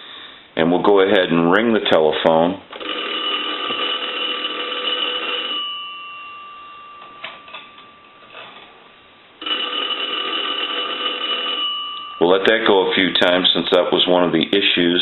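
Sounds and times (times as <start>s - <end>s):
telephone bell ringing: 2.8s - 8.5s, 9.4s - 12.9s
gongs humming: 5.7s - 8.8s.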